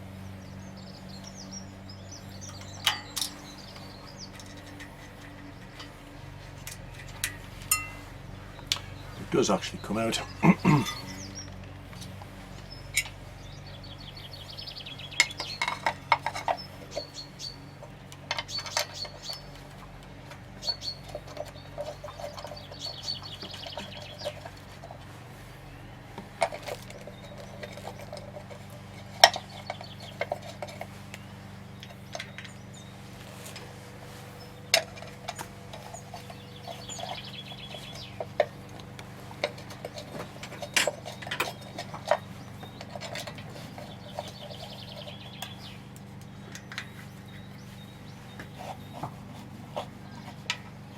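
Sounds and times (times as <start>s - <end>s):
bird chirping: 0.0s - 50.9s
metallic clinks of hand tools: 2.4s - 6.1s, 6.7s - 8.2s.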